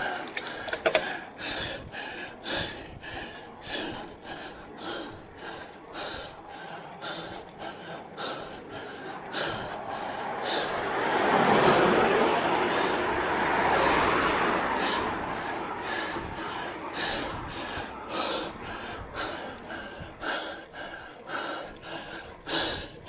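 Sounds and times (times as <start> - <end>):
heavy rhythmic breathing: 0.0 - 23.0
vehicle passing: 3.7 - 20.8.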